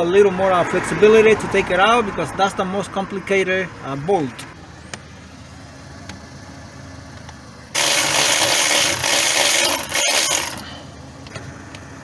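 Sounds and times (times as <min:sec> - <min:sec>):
pneumatic tool air hissing: 0:07.8 - 0:10.8.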